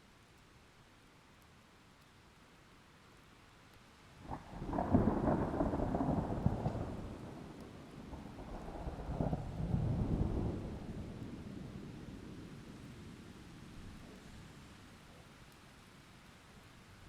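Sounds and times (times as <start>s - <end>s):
thunder rumble: 4.3s - 12.6s.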